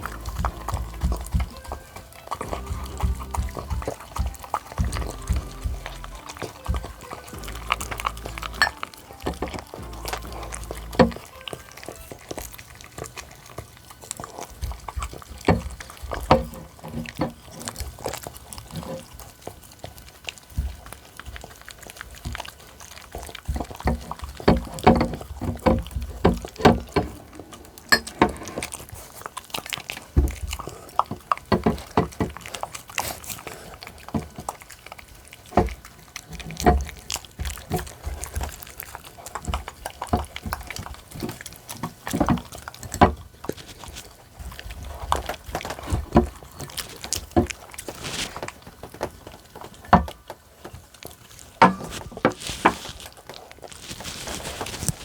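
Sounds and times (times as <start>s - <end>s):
low bumps: 0.0s - 1.8s, 2.4s - 8.9s, 9.6s - 11.2s
dogs chewing wet food: 0.0s - 55.0s.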